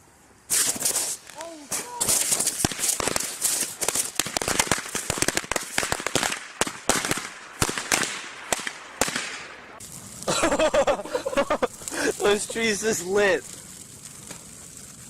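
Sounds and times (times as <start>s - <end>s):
firecrackers popping: 0.4s - 15.0s
voices: 10.4s - 13.5s.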